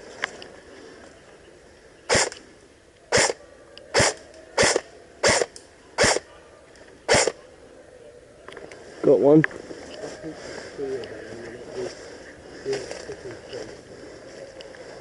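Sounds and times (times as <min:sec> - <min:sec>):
airsoft rifle single shots: 0:02.1 - 0:02.4, 0:03.1 - 0:06.3, 0:07.1 - 0:07.4.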